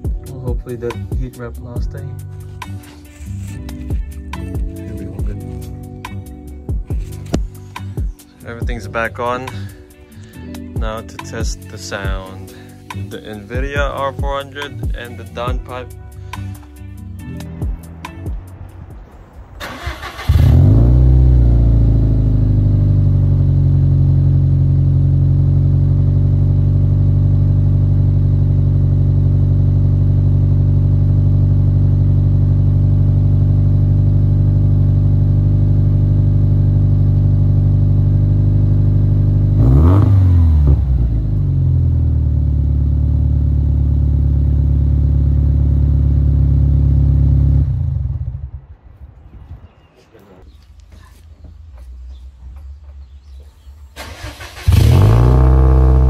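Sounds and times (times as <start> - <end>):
car engine starting and idling: 14.9 - 48.8, 52.1 - 56.0
engine revving: 19.6 - 32.0, 35.1 - 48.6, 54.0 - 56.0.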